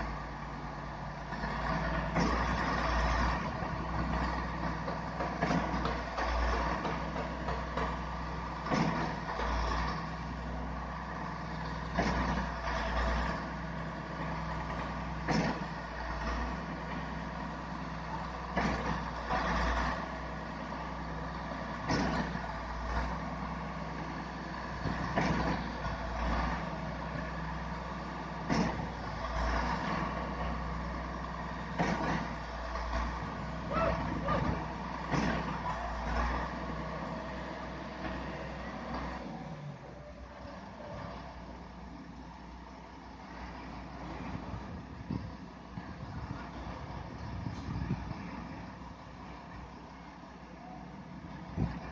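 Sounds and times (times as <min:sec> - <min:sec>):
diesel engine droning: 0:00.0 - 0:51.9
pump clunk and surge: 0:08.6 - 0:09.2, 0:15.3 - 0:15.7, 0:34.3 - 0:35.7.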